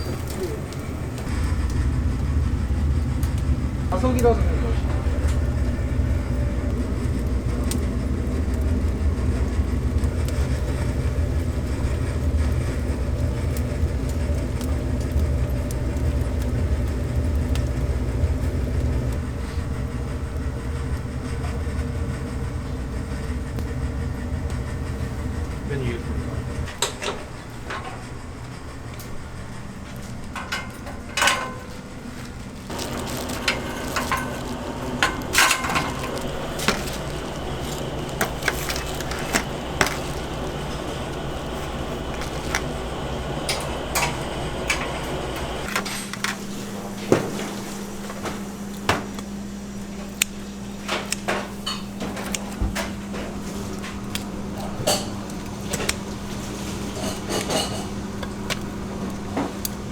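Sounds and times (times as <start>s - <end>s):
utensils and containers clinking: 0.0s - 1.5s, 32.6s - 49.2s, 50.8s - 59.8s
steady machine hum: 0.0s - 59.9s.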